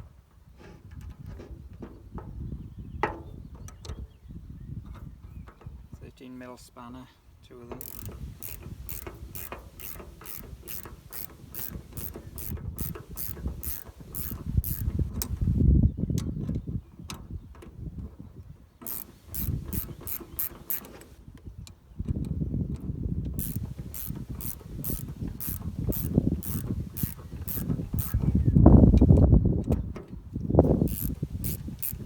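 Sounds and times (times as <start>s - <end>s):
ratcheting spanner clicking: 7.8s - 15.6s, 18.9s - 21.2s, 23.4s - 29.2s, 30.6s - 32.0s.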